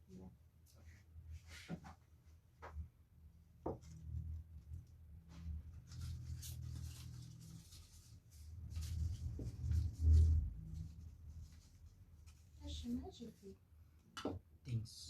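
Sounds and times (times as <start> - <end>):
faint scratchy rustling: 4.0 - 13.6.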